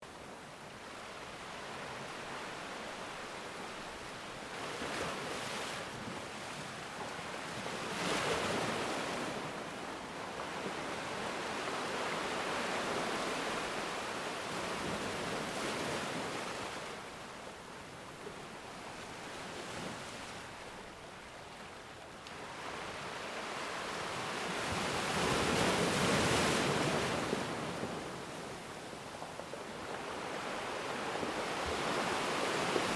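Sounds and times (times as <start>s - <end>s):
sea waves washing onto shore: 21.4s - 32.9s.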